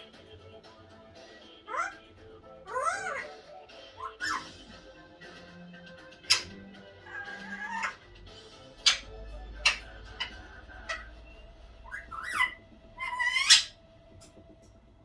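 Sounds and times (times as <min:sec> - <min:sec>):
parakeet chirps: 0:01.4 - 0:04.8, 0:06.0 - 0:13.8
parakeet gliding whistles: 0:02.7 - 0:04.8, 0:06.2 - 0:13.8.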